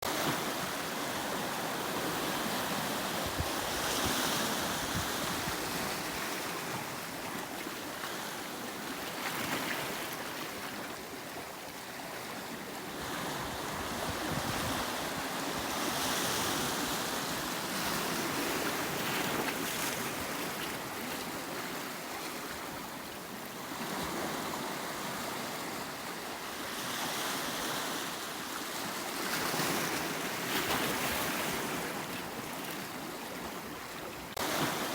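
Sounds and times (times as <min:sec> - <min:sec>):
waves breaking on rocky shore: 0:00.0 - 0:34.9
wind on microphone: 0:01.2 - 0:06.4, 0:13.0 - 0:18.9.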